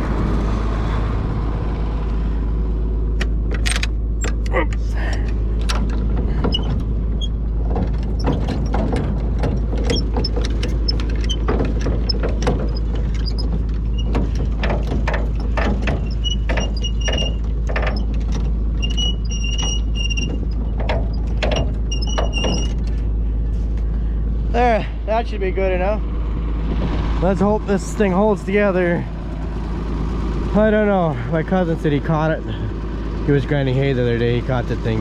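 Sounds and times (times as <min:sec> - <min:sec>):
tractor engine running: 0:00.0 - 0:35.0
metal clanks and rattles: 0:03.1 - 0:24.4.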